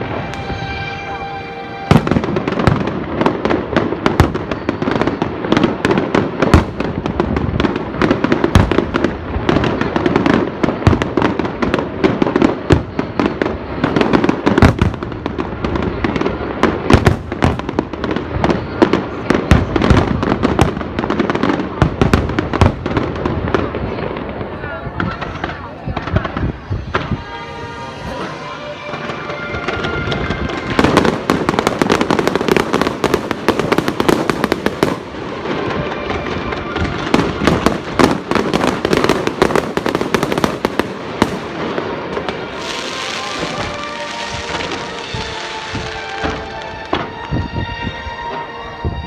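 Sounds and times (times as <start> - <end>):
fireworks banging and crackling: 0.0 - 49.0.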